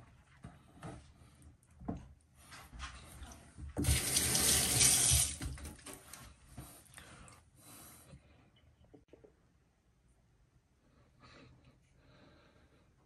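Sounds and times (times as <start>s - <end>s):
tap water rushing into sink: 3.8s - 5.6s.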